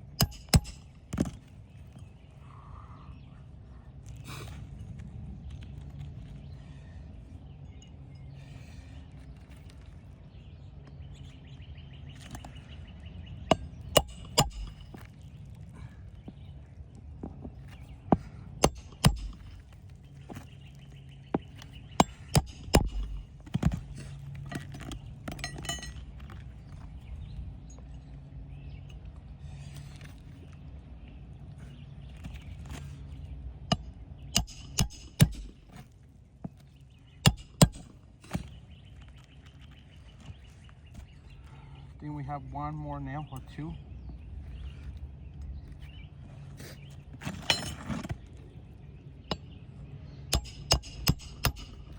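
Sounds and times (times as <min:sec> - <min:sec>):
hammer striking nails: 0:00.2 - 0:01.4, 0:13.5 - 0:15.0, 0:18.6 - 0:19.6, 0:22.0 - 0:23.8, 0:33.7 - 0:35.6, 0:50.3 - 0:51.9.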